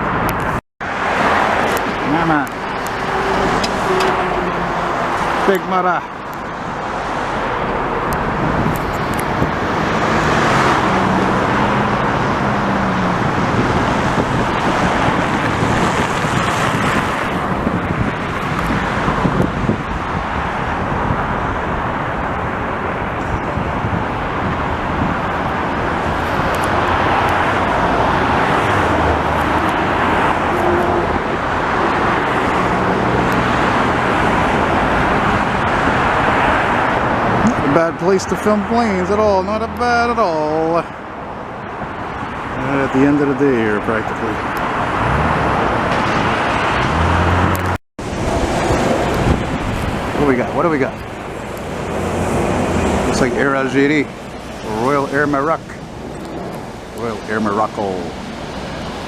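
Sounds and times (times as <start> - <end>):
heavy vehicle engine drone: 0.0 - 59.0
highway traffic: 0.0 - 59.0.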